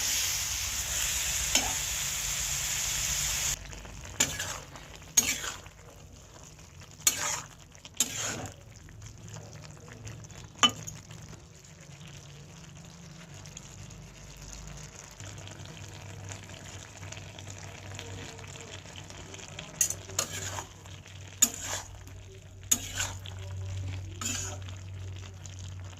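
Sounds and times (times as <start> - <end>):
food sizzling in a frying pan: 0.0 - 25.9
spatula scraping and knocking pan: 4.2 - 5.6, 21.4 - 21.9, 22.7 - 23.2, 24.2 - 24.6.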